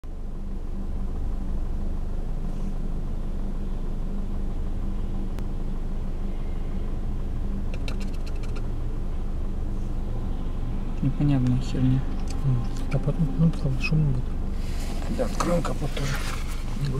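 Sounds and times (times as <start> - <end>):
car engine running: 0.1 - 16.9
sharp clicks: 7.7 - 8.7.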